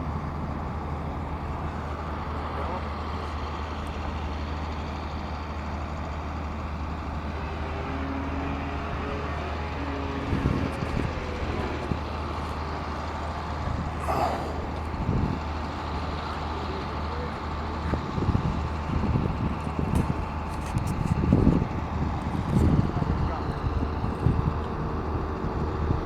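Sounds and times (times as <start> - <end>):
steady low rumble: 0.0 - 26.0
model plane motor droning: 5.0 - 26.0.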